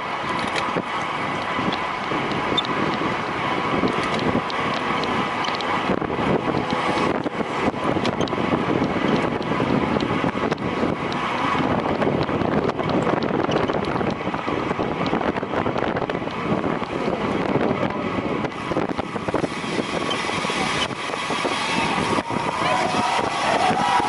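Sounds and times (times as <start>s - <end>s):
vehicle running noise: 0.0s - 24.0s
wind rushing over microphone: 0.0s - 24.0s.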